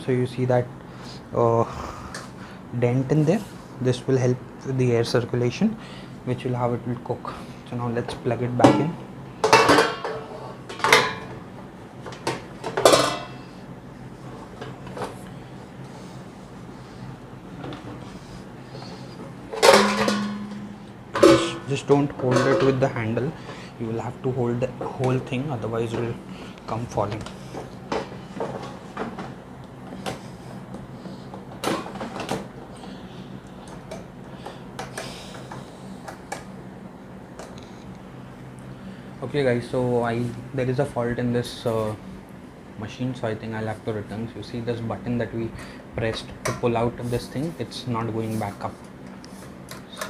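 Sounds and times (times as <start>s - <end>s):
metal pan and basket clanking: 19.6s - 22.9s.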